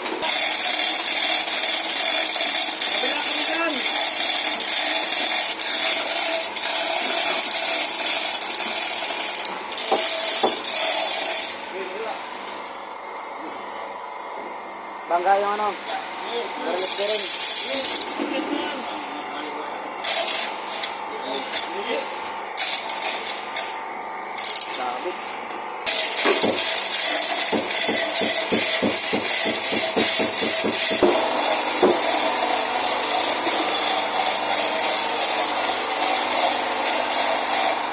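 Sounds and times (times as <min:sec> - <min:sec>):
hand tool scraping metal: 0:00.2 - 0:11.6, 0:25.9 - 0:35.4.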